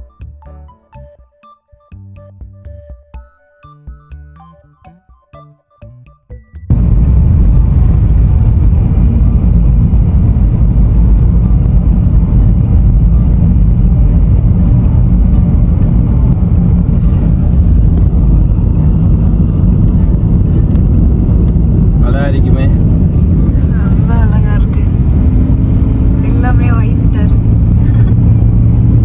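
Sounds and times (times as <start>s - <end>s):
car cabin road and engine rumble: 6.7s - 29.0s.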